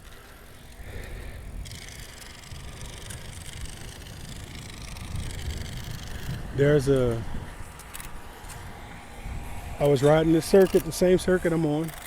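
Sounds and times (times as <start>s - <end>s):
road noise hiss: 0.0s - 12.0s
wind rumbling on microphone: 0.0s - 12.0s.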